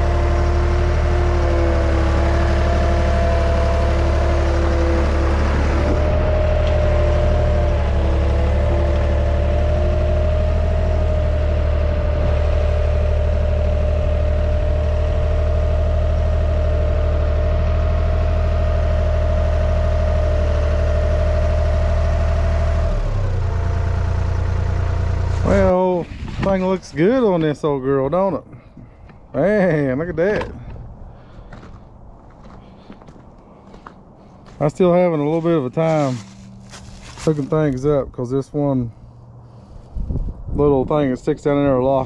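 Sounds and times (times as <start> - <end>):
engine running at high speed: 0.0 - 26.7, 35.4 - 37.8
steady whine: 25.2 - 42.0.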